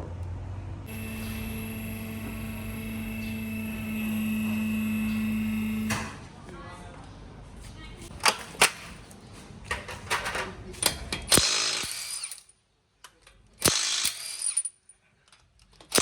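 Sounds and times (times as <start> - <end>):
pneumatic tool bursts: 0.9 - 6.2, 13.6 - 14.5.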